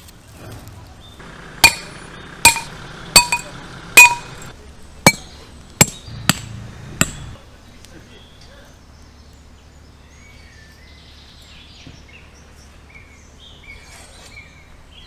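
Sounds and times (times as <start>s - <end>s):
sharp ringing metallic strikes: 1.6s - 4.5s, 5.1s - 6.4s.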